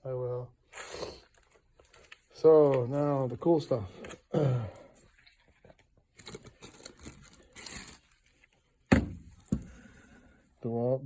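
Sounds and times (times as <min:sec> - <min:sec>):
rustling and crinkling of items: 0:00.6 - 0:10.1
sharp knocks: 0:08.9 - 0:09.7.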